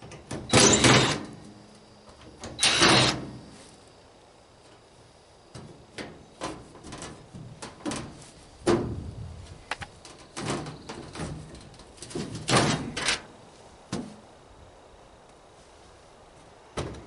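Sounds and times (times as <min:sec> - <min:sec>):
metal parts clanking and rattling: 0:00.0 - 0:01.4, 0:02.4 - 0:03.3.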